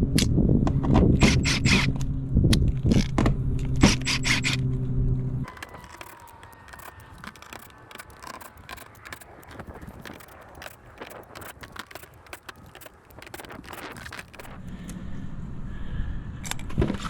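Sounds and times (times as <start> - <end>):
plastic roof panels clicking and rattling: 5.5 - 14.8.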